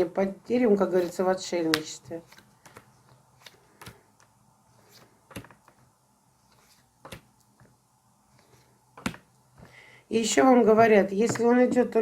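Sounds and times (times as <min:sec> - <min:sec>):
cards clicking and tapping on table: 0:05.3 - 0:05.9, 0:07.0 - 0:07.8, 0:09.0 - 0:09.3.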